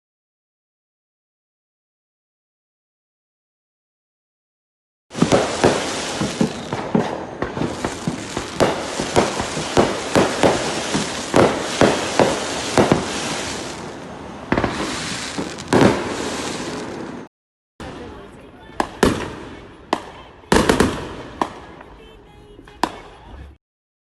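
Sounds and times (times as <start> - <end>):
fireworks bangs: 5.1 - 23.5
fireworks crackle: 5.1 - 23.5.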